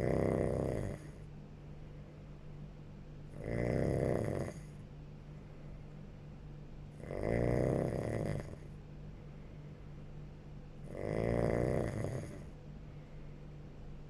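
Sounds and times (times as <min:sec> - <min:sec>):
person snoring: 0:00.0 - 0:01.2, 0:03.3 - 0:04.8, 0:07.0 - 0:08.6, 0:10.9 - 0:12.5
steady low hum: 0:00.0 - 0:14.0.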